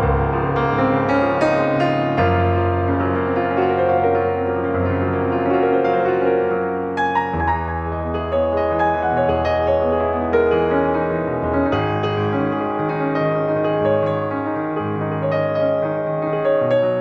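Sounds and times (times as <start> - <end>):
calm piano music: 0.0 - 17.0.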